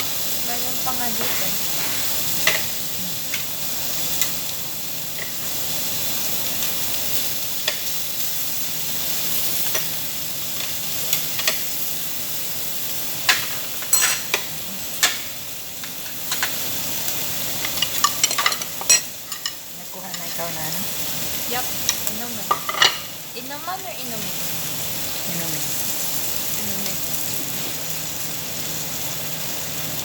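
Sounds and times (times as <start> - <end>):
meat sizzling on a grill: 0.0 - 30.0
tongs clinking against grill: 1.0 - 4.5, 6.6 - 8.0, 9.4 - 12.0, 13.2 - 16.8, 17.5 - 20.6, 21.8 - 23.2.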